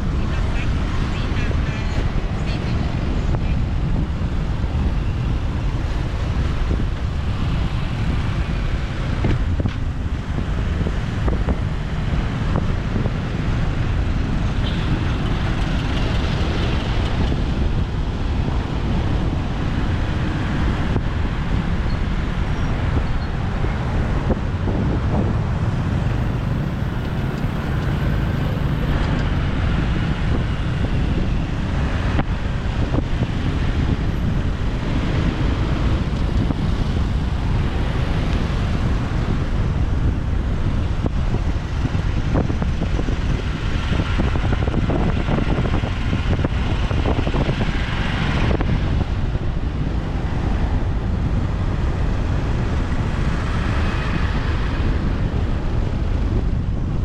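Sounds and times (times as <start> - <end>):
wind buffeting microphone: 0.0 - 57.0
motorbike engine rumble: 21.1 - 57.0.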